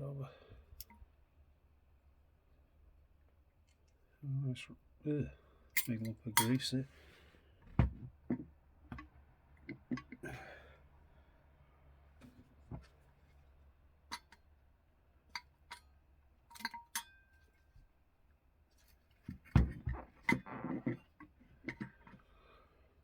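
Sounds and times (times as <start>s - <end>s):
parts knocking and rattling: 19.2s - 22.2s.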